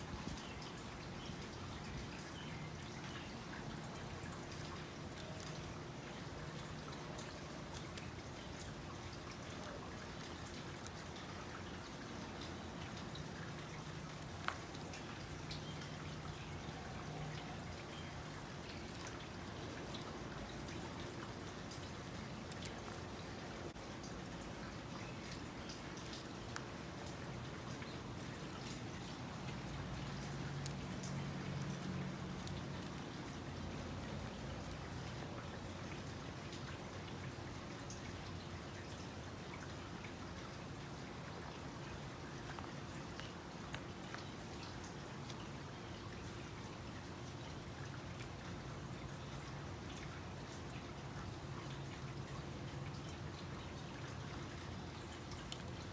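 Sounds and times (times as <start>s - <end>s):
basket weaving clicks and crackles: 3.1s - 37.2s, 41.4s - 45.6s.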